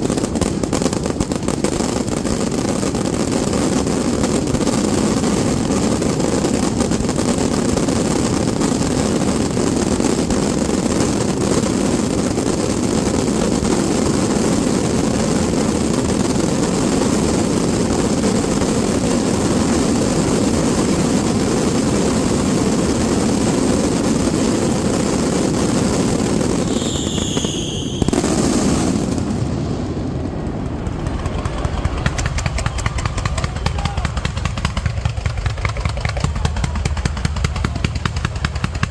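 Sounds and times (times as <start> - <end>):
firework whistle: 0.0 - 30.2, 30.8 - 38.9
fireworks bursts and crackling: 0.0 - 38.9
sharp bang: 29.0 - 38.9.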